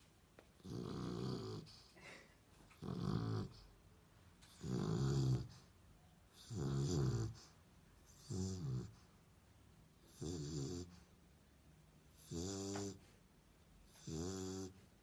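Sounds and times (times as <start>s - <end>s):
dog snoring: 0.6s - 1.9s, 2.8s - 3.7s, 4.5s - 5.7s, 6.3s - 9.1s, 10.0s - 11.1s, 12.1s - 13.0s, 13.8s - 14.9s.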